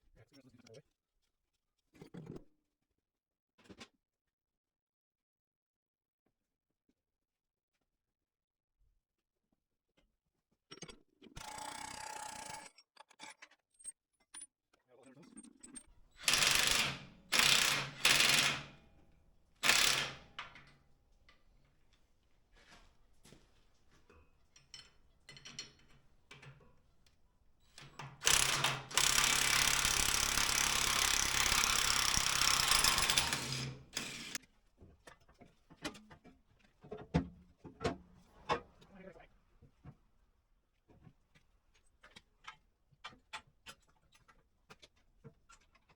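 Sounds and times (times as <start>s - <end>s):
power tool running: 16.1s - 19.0s, 19.6s - 20.8s, 27.8s - 34.4s.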